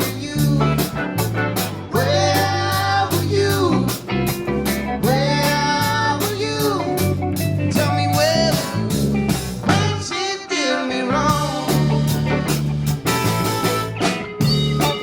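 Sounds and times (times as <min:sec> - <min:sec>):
bass and drums: 0:00.0 - 0:10.4, 0:11.1 - 0:15.0
sliding electric guitar: 0:00.0 - 0:15.0.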